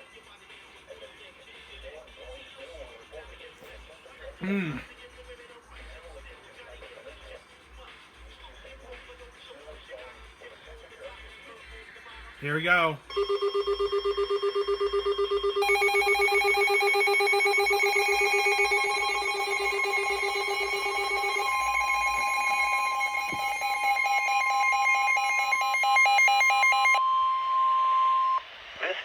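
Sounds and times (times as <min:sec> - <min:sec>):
fast warbling electronic beeps: 0:13.1 - 0:27.0
steady long alarm tone: 0:13.1 - 0:28.4.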